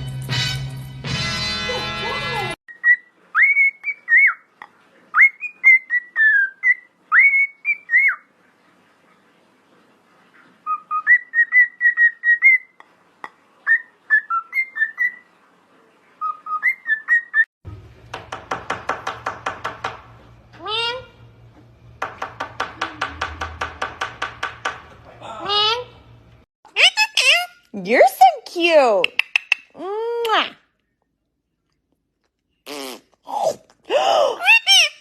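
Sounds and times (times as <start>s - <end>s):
parrot whistling: 2.7s - 4.4s, 5.2s - 8.2s, 10.7s - 12.7s, 13.7s - 15.2s.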